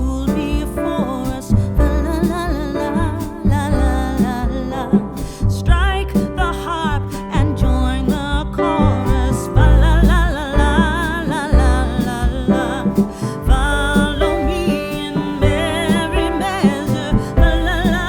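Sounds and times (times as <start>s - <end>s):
heavy pulsing bass: 0.0s - 18.0s
person singing with vibrato: 0.0s - 18.0s.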